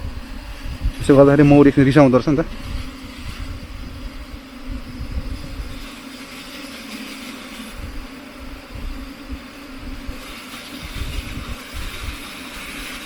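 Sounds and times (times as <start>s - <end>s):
low rumbling on microphone: 0.0s - 5.8s
bees buzzing: 0.0s - 13.0s.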